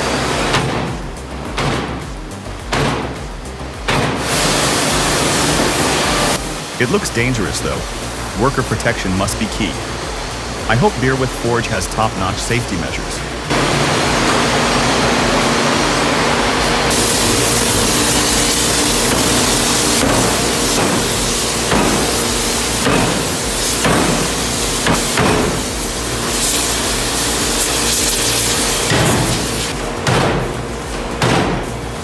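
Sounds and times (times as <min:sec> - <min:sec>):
hard hammer-like thuds: 0:00.0 - 0:06.6, 0:13.5 - 0:31.8
loud hissing: 0:00.0 - 0:32.0
steady mechanical hum: 0:00.0 - 0:32.0.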